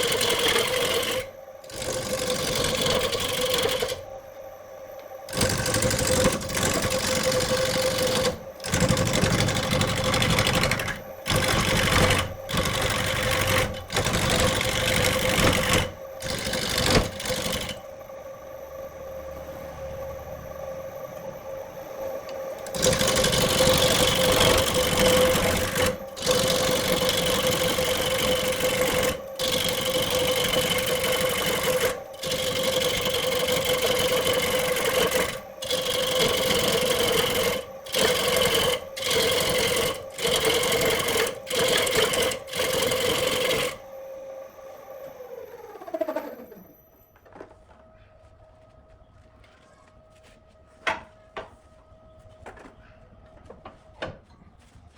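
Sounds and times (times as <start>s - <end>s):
power tool grinding: 0.0s - 4.1s, 5.3s - 17.9s, 22.6s - 43.8s.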